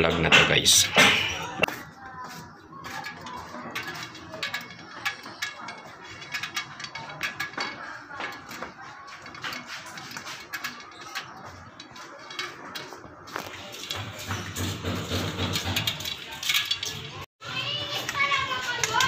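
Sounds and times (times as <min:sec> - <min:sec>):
metallic clicks and ratcheting: 0:02.8 - 0:17.3.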